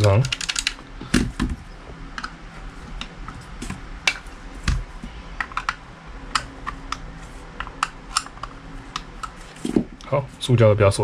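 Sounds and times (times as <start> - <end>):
plastic and metal parts clicking: 0.0 - 0.8.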